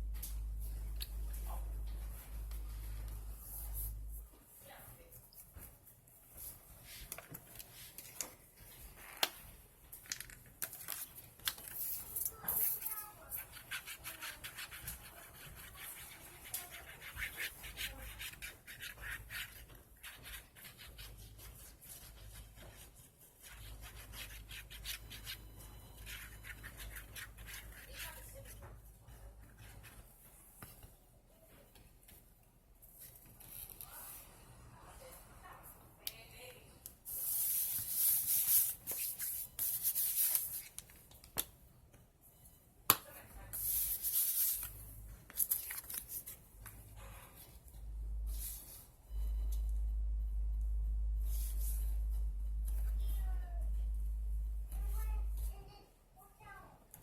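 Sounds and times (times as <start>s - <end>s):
paper being rubbed: 11.8s - 25.4s.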